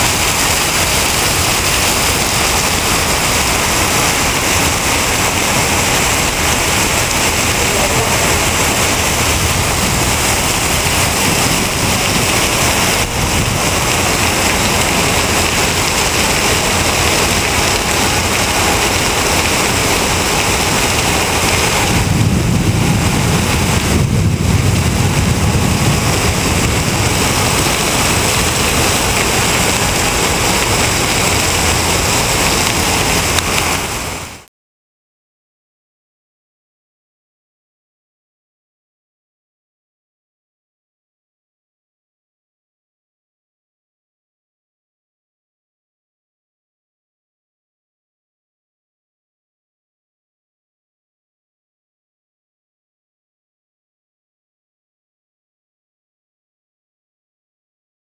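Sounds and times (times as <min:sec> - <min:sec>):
deep rumble: 0:00.0 - 0:34.1
rainwater pouring off building: 0:00.0 - 0:34.5.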